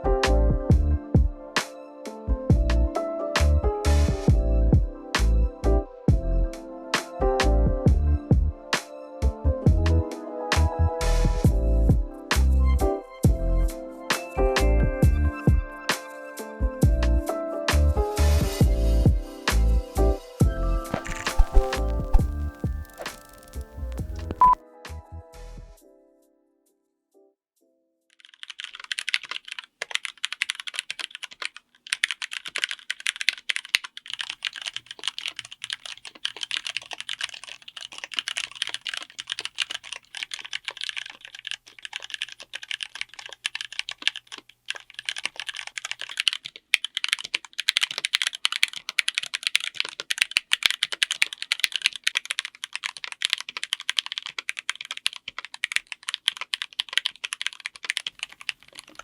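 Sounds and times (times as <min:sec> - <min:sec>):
fast mechanical keyboard typing: 0:21.0 - 0:24.6, 0:28.1 - 0:59.0.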